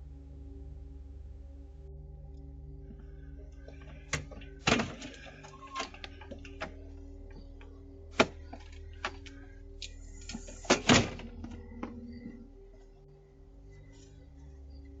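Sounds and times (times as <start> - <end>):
door thud: 10.7 - 12.0.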